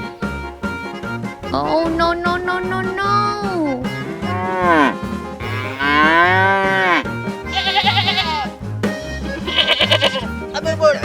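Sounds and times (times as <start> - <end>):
background music with steady beat: 0.0 - 11.0
cow mooing: 4.2 - 8.5, 9.4 - 10.3.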